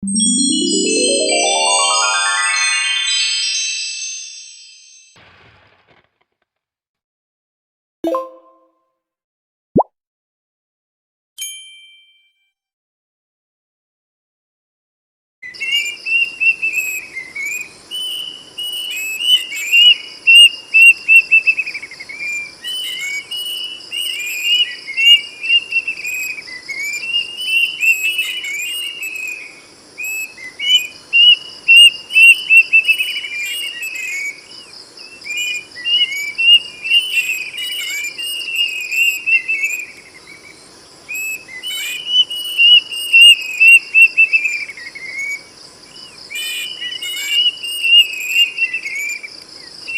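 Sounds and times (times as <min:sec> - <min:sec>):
cuckoo singing whistled phrases: 0:35.3 - 0:40.0, 0:41.1 - 0:45.2, 0:46.4 - 0:49.2.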